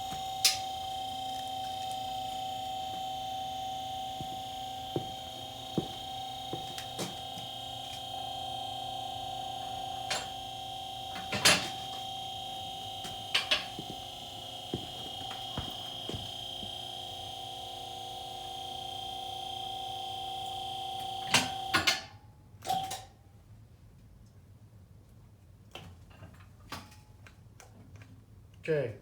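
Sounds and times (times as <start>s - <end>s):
lift pump motor whine: 0.0s - 22.1s.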